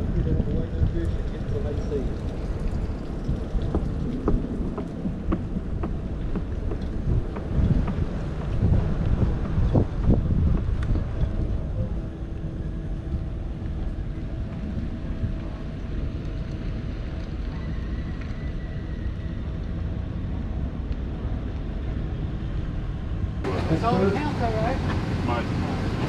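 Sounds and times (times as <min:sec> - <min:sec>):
wind on microphone: 0:00.0 - 0:26.0
outboard engine running: 0:23.4 - 0:26.0.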